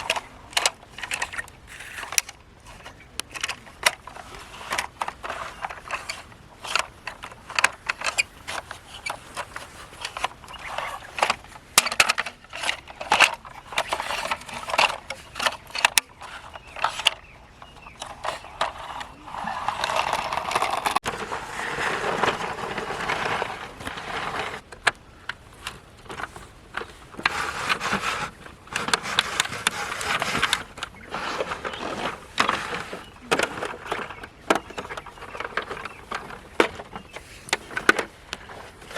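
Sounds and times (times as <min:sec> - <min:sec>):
toy vehicles clicking and knocking: 0:00.0 - 0:38.9
toy vehicles scraping and rolling: 0:00.0 - 0:38.9.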